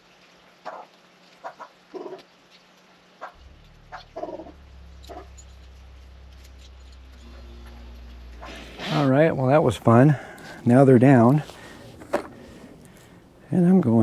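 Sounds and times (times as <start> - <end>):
chickens clucking: 0.6 - 2.3, 3.2 - 5.3
steady low hum: 3.4 - 14.0.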